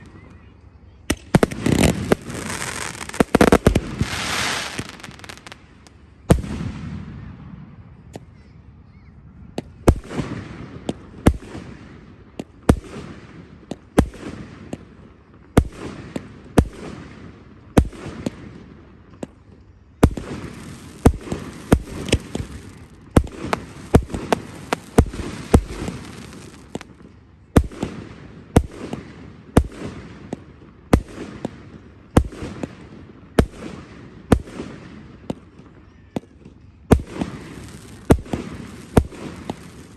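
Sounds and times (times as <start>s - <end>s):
fireworks crackle: 1.3s - 6.5s, 20.0s - 29.7s, 36.9s - 39.9s
fireworks bangs: 1.3s - 8.1s, 20.0s - 35.6s, 36.4s - 39.9s.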